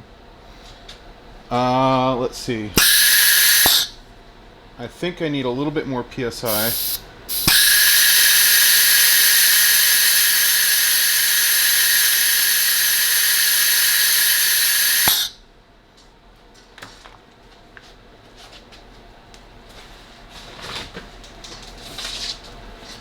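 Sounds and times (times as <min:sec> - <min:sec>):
compressed air hissing: 0:02.8 - 0:04.0, 0:06.4 - 0:15.4.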